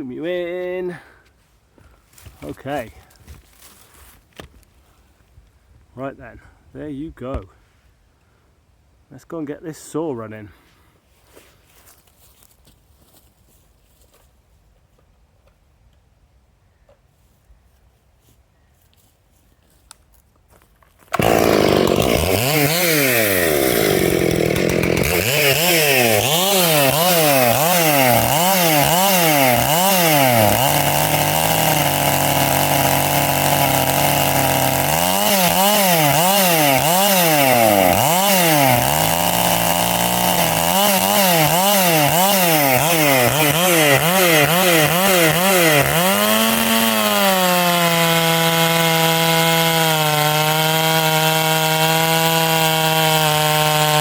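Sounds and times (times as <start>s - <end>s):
chainsaw revving: 21.1s - 54.0s.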